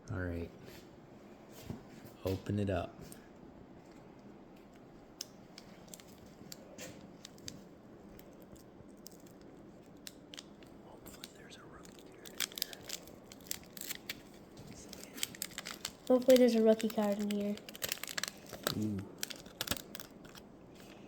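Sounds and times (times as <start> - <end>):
paper wrapper crinkling and tearing: 5.5 - 20.9.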